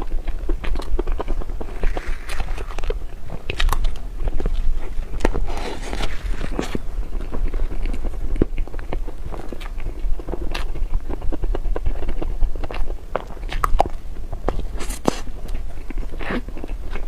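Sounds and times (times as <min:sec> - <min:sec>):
crunchy chewing: 0:00.0 - 0:17.0.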